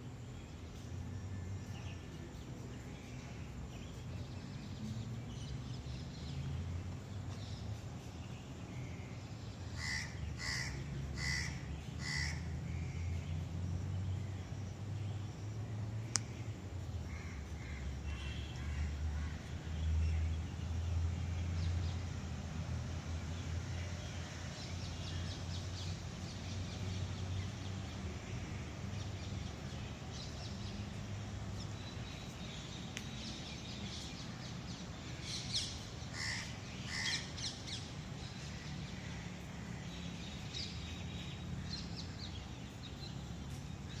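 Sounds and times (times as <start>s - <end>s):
birds chirping: 16.1s - 44.0s.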